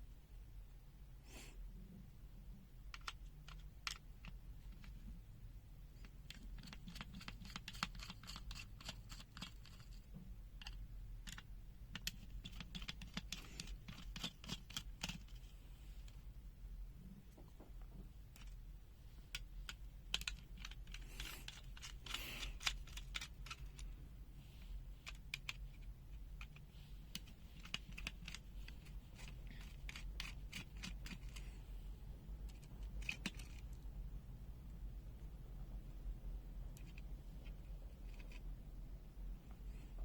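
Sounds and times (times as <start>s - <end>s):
steady low hum: 0.0s - 40.0s
plastic clicks and scrapes: 2.9s - 5.2s, 5.9s - 16.2s, 17.3s - 33.9s, 36.7s - 38.6s.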